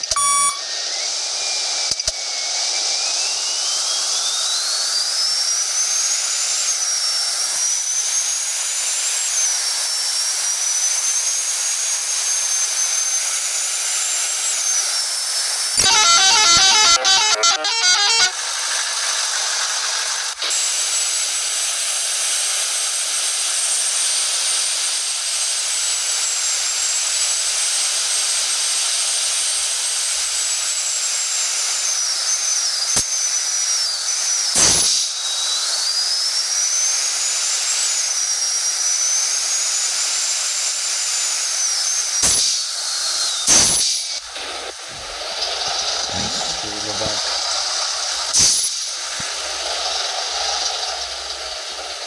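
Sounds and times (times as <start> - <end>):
multi-tone air horn tune: 0.0 - 0.7, 15.8 - 18.5
faint high whistle: 0.0 - 0.8
loud steady hiss: 42.0 - 52.0.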